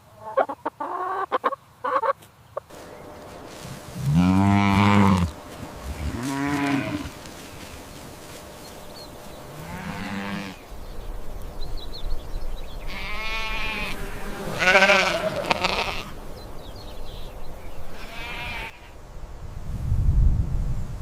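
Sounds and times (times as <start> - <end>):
sheep or goat bleating: 3.9 - 7.4, 9.6 - 10.6, 12.9 - 16.2, 18.0 - 19.0.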